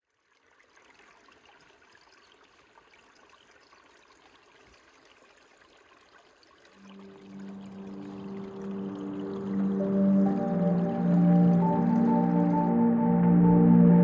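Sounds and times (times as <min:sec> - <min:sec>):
flowing creek: 0:00.0 - 0:12.7.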